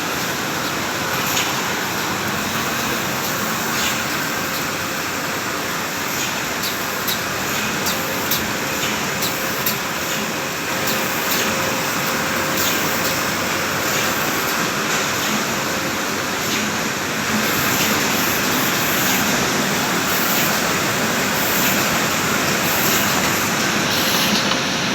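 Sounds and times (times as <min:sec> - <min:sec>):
printing machine running: 0:00.0 - 0:24.9.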